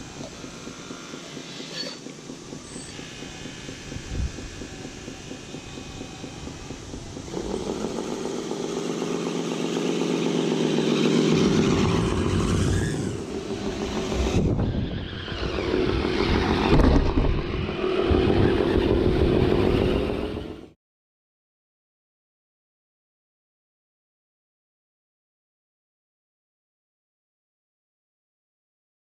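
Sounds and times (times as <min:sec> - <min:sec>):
radio-controlled vehicle motor: 0:00.0 - 0:20.6.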